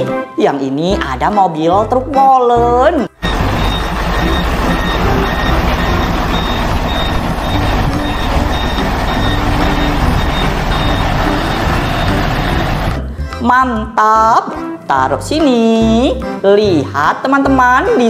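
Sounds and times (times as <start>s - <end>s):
reversing beeper: 3.2s - 13.0s
truck engine running: 3.2s - 13.0s.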